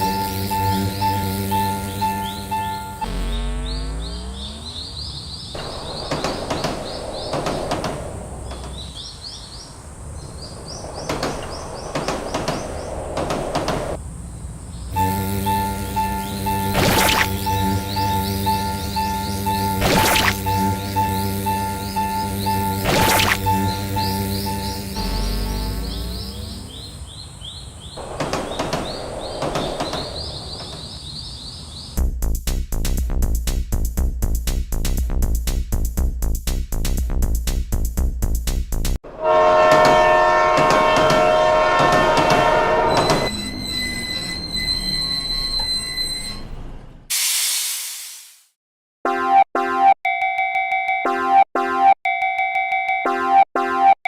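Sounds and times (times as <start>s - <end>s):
high rising chirps: 0.0s - 5.6s, 14.9s - 27.2s.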